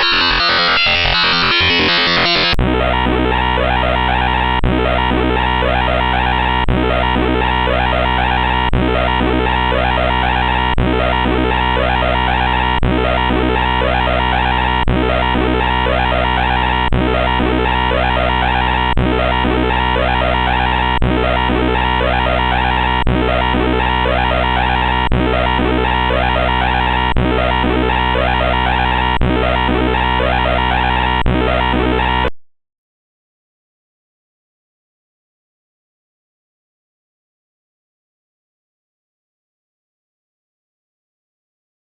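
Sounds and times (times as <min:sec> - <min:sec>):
harsh synthesized noisy loop: 0:00.0 - 0:32.3.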